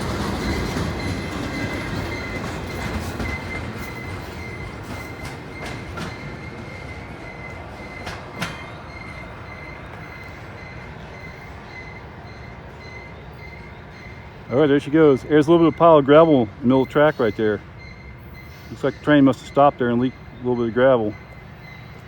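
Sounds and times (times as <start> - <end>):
clanks over the rail: 0.0 - 10.9
freight train cars rumbling: 0.0 - 22.0
train wheel squeal: 0.0 - 22.0.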